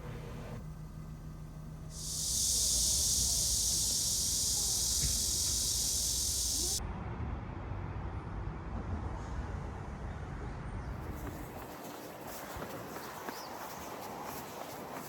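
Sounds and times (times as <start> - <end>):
steady high-pitched hiss: 1.3 - 6.8.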